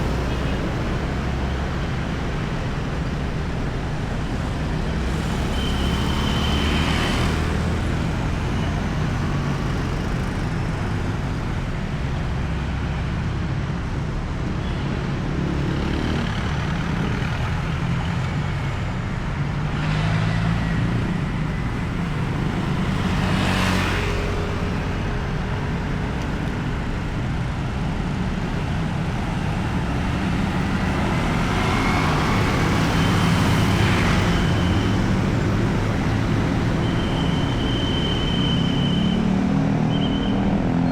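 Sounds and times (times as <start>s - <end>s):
road traffic rumble: 0.0s - 40.9s
vehicles passing close by: 0.0s - 40.9s.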